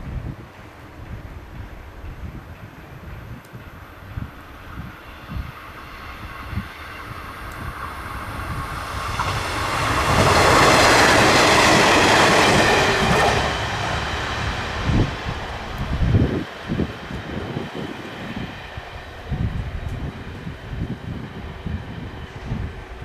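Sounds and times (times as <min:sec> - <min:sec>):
train passing: 0:00.0 - 0:23.0.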